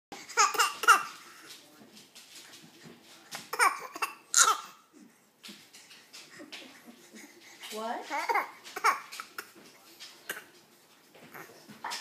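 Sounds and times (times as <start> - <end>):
baby fake-coughing: 3.5 - 4.8.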